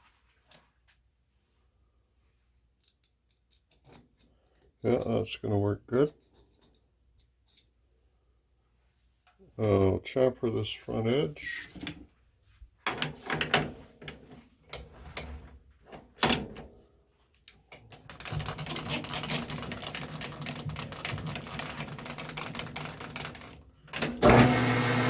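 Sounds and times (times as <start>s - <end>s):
metal clicks and clanks: 17.4s - 24.2s.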